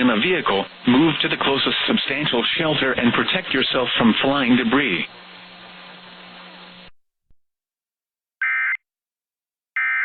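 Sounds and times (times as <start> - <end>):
radio hiss and hum: 0.0 - 6.9.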